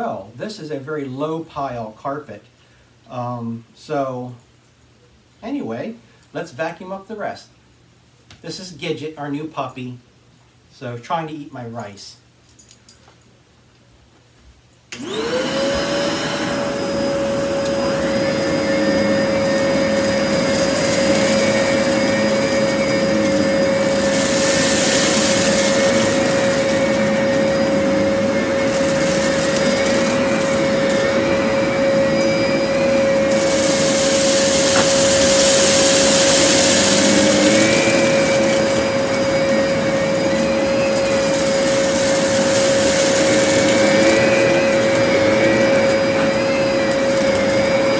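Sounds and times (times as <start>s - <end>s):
vacuum switch: 14.9s - 39.5s
vacuum cleaner motor whine: 14.9s - 47.9s
vacuum air rush: 15.0s - 47.9s.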